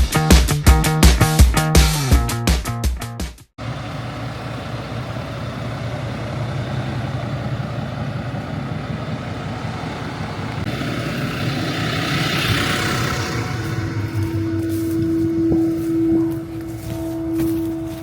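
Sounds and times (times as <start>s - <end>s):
tractor diesel engine running: 3.6s - 18.0s.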